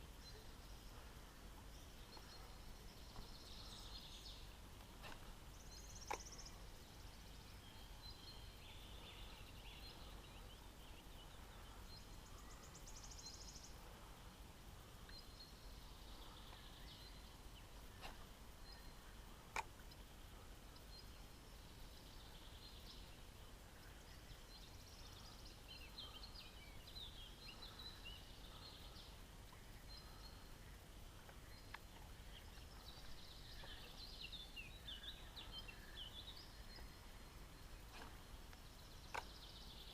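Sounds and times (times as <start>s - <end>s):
faint birdsong: 0.0s - 39.9s
sharp clicks: 19.5s - 20.0s.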